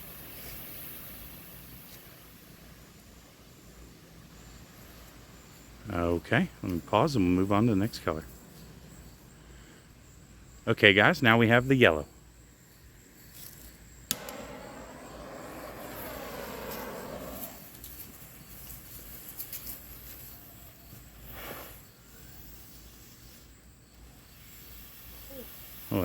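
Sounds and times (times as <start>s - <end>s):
smoke hissing: 0.0s - 3.1s, 13.3s - 20.0s, 20.9s - 26.0s
smoke ball igniting click: 13.4s - 18.0s
soft rush: 14.1s - 18.2s.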